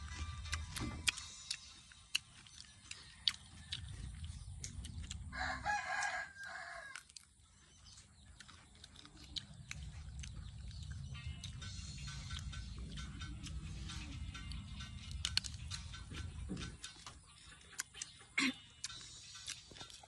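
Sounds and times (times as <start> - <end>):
rooster crowing: 5.3 - 7.0
low background rumble: 7.5 - 17.6.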